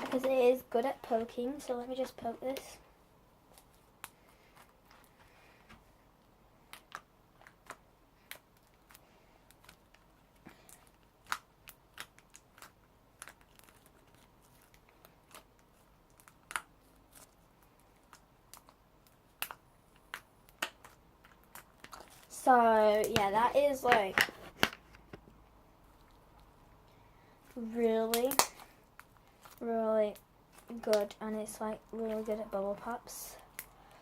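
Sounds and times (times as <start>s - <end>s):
slime clicking and popping: 28.1s - 28.6s.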